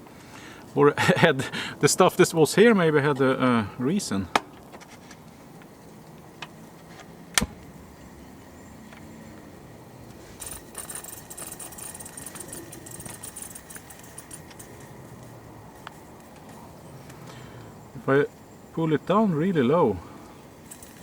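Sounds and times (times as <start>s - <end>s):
small hard objects jingling: 10.3s - 15.3s, 20.6s - 21.0s.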